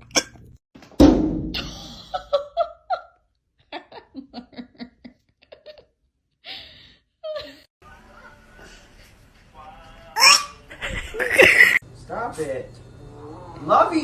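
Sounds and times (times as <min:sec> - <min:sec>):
person laughing: 0:03.7 - 0:05.9, 0:10.2 - 0:11.8.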